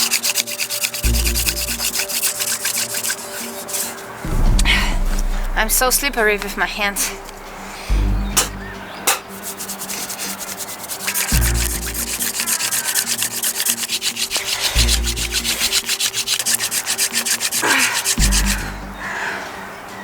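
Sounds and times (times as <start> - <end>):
wood rasping on wood: 0.0 - 4.3, 8.4 - 19.0
low thuds: 4.2 - 9.3.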